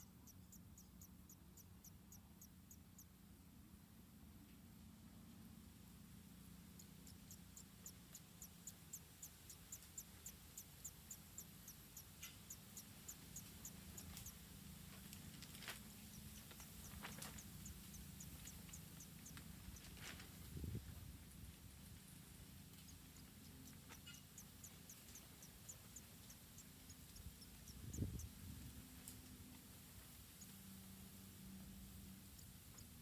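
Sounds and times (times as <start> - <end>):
low steady hum: 0.0 - 33.0
high-pitched animal chirps: 22.8 - 28.3.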